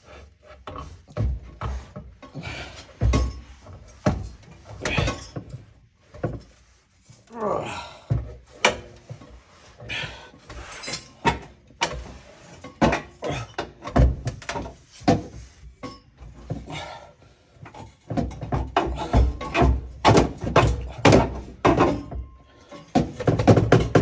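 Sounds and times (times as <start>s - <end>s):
transmission knocking and scraping: 17.7s - 24.0s.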